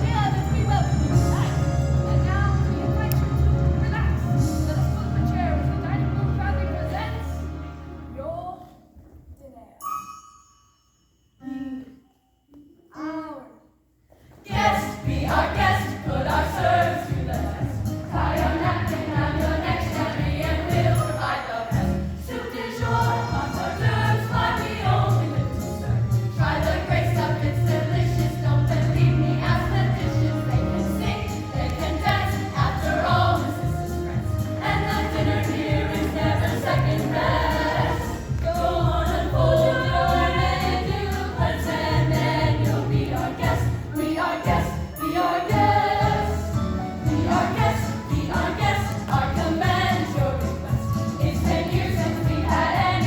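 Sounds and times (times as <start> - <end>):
choir singing: 14.5 - 53.0.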